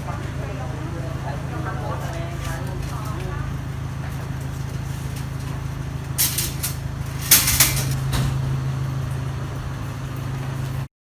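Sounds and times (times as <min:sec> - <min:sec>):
engine idling: 0:00.0 - 0:10.8
short sharp clatters: 0:06.2 - 0:08.4.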